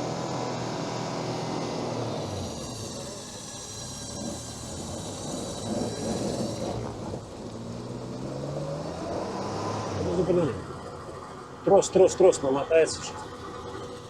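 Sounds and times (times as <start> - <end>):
rising whine: 0.0 - 14.0
vehicle engine under load: 0.0 - 14.0
winch running: 0.0 - 14.0.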